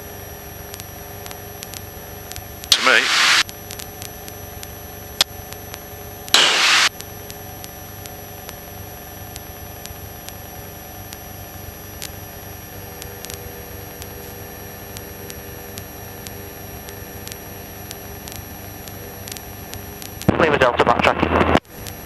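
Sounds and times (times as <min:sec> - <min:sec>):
light aircraft engine running: 0:00.0 - 0:02.7, 0:03.4 - 0:22.0
radio squelch hiss: 0:00.6 - 0:22.0
sharp click: 0:01.6 - 0:08.6.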